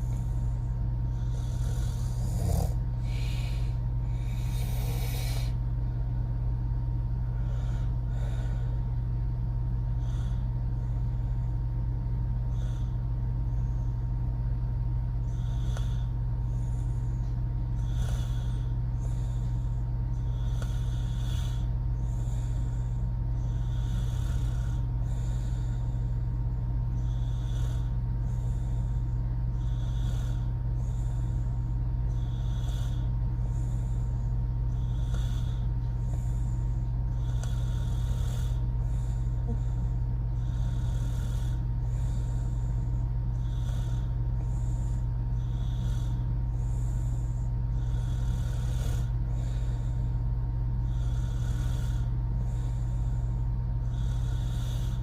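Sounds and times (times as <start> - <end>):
woman snoring: 0.0 - 0.4, 1.2 - 5.6, 17.8 - 22.7, 23.4 - 25.9, 26.9 - 31.4, 34.7 - 36.4, 37.1 - 50.2, 50.8 - 55.0
steady low hum: 0.0 - 55.0.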